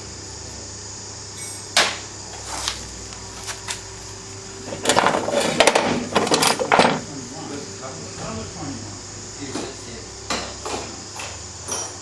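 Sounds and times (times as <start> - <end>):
steady background hum: 0.0 - 12.0
engine parts clattering: 4.7 - 7.1.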